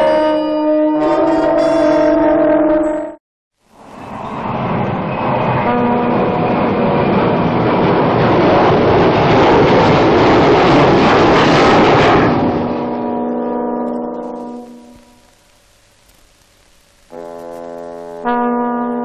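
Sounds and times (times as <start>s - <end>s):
horn-like chord: 0.0s - 3.2s, 5.6s - 6.8s, 12.2s - 15.4s, 17.1s - 19.0s
loud rushing roar: 3.6s - 15.4s.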